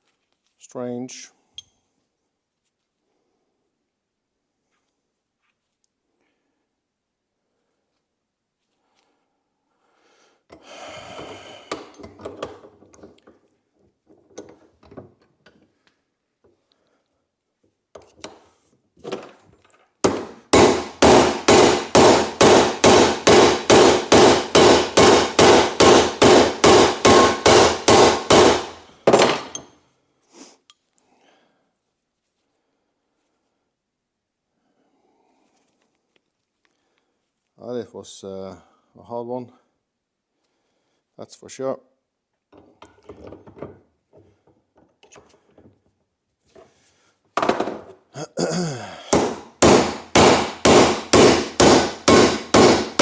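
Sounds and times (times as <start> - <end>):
hammer striking metal: 20.1 - 29.7, 49.1 - 53.0.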